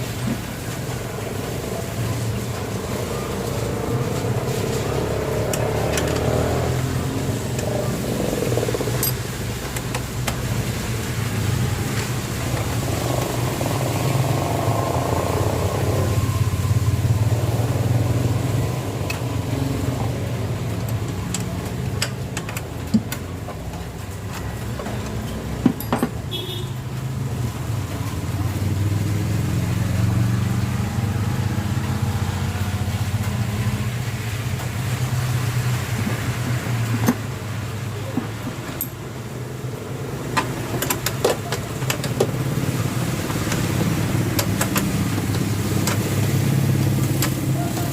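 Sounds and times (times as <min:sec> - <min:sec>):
engine-like drone: 0:00.0 - 0:26.0, 0:27.0 - 0:47.9
hand tools clicking on bolts: 0:07.6 - 0:10.4, 0:20.8 - 0:26.3.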